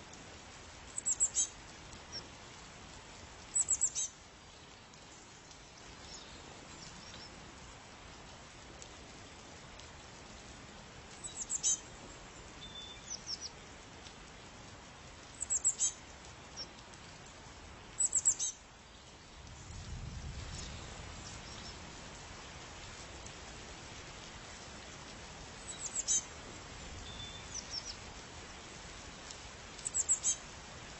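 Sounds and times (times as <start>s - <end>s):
background hiss: 0.0s - 30.9s
songbird calling: 1.0s - 1.5s, 3.6s - 4.1s, 11.2s - 11.8s, 15.4s - 16.0s, 18.0s - 18.6s, 25.7s - 26.2s, 29.8s - 30.4s.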